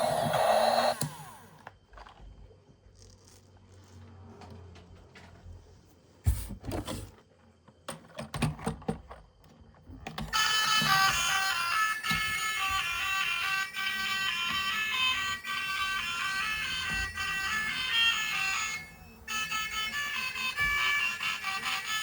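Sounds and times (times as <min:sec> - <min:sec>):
plastic toys clicking and knocking: 0:07.8 - 0:12.9.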